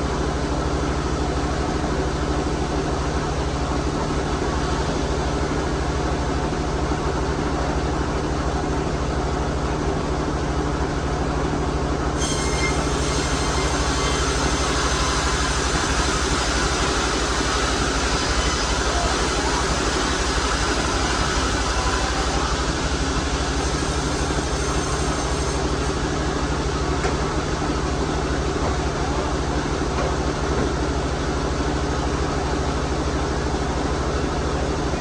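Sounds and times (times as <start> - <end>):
blade cutting wood whine: 12.2 - 26.2
sawmill saw motor hum: 12.2 - 30.1.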